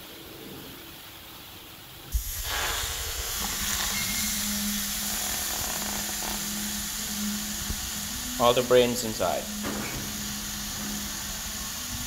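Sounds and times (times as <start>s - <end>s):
food sizzling in a hot pan: 2.1s - 12.0s
thump: 9.6s - 10.2s.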